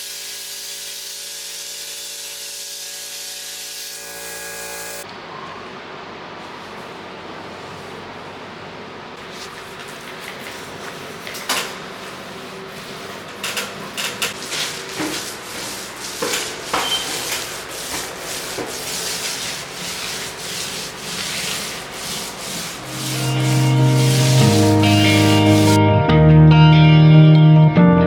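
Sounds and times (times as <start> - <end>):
hand tool scraping drywall: 9.3 - 25.8.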